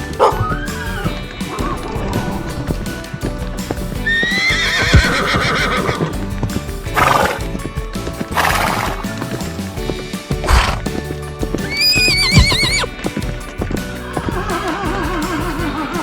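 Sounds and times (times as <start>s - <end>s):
background music: 0.0s - 16.0s
horse whinnying: 4.1s - 6.3s, 11.6s - 13.0s.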